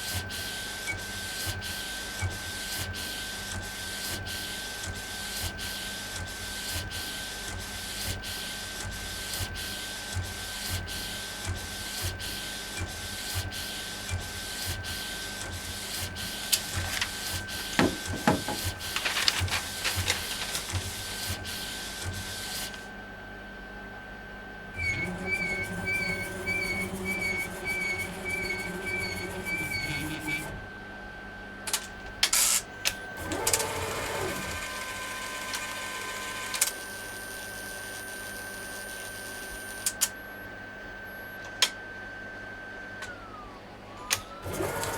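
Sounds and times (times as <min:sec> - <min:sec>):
inkjet printer carriage sweeping: 0:15.6 - 0:22.9
printer clicks: 0:16.5 - 0:20.9.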